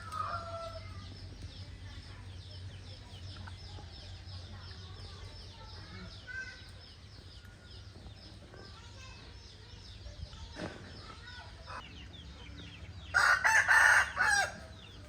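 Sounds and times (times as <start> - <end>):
chickens clucking softly: 11.0 - 12.8.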